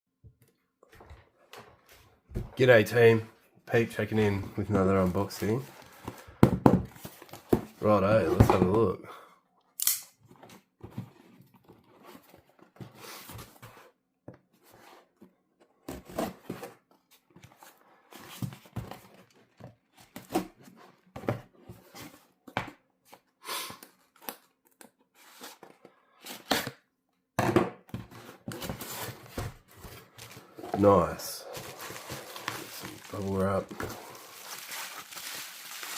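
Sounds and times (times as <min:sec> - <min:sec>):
packaging rustling and knocking: 0:27.4 - 0:35.9
cardboard box tearing: 0:31.5 - 0:35.9.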